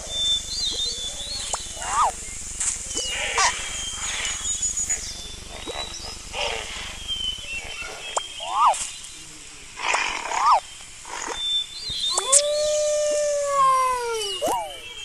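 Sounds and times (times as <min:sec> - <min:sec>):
animal chirping whistles: 0:00.0 - 0:09.0, 0:09.8 - 0:15.0
animal squeals: 0:00.7 - 0:02.2, 0:03.0 - 0:06.9, 0:07.6 - 0:08.8, 0:09.8 - 0:11.4, 0:12.0 - 0:15.0
short clicks: 0:09.8 - 0:12.8.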